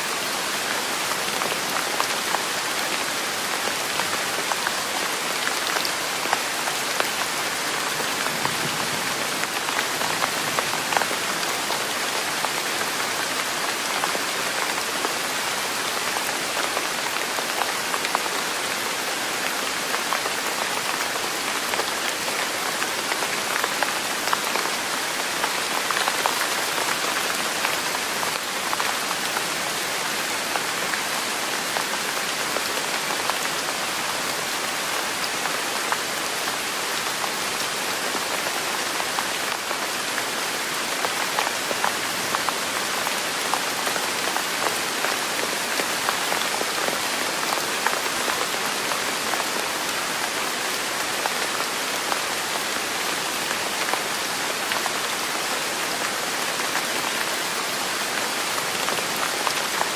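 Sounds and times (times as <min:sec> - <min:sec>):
steady rain on a surface: 0:00.0 - 0:59.9.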